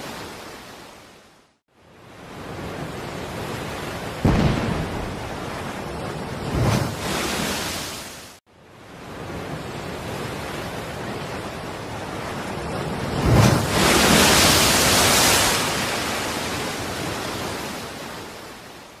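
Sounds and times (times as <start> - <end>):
surf rushing: 2.7 - 8.4, 9.4 - 18.3.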